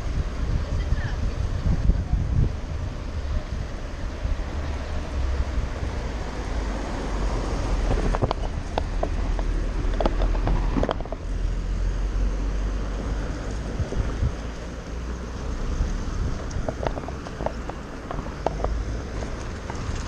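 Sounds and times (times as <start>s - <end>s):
cars passing: 0.0s - 20.0s
wind rumbling on microphone: 0.0s - 20.0s.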